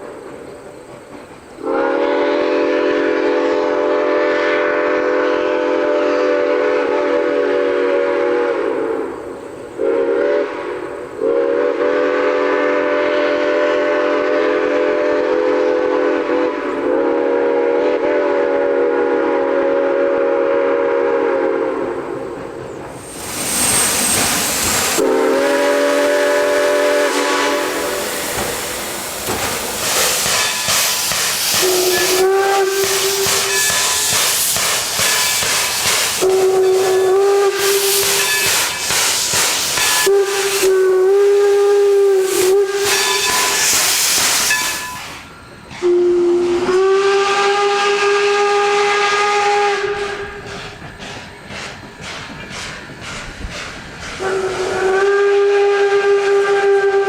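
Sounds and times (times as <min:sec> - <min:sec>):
steam hissing: 0:00.0 - 0:57.0
steam locomotive chime whistle: 0:01.6 - 0:22.4, 0:23.0 - 0:51.4, 0:54.2 - 0:57.0
single-note whistle blasts: 0:31.6 - 0:34.2, 0:36.2 - 0:38.9, 0:39.8 - 0:43.8, 0:44.4 - 0:46.9.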